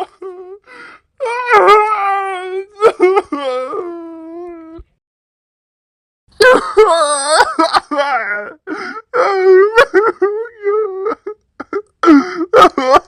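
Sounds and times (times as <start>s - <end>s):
cartoon voice crying: 1.3s - 4.8s, 6.4s - 11.8s.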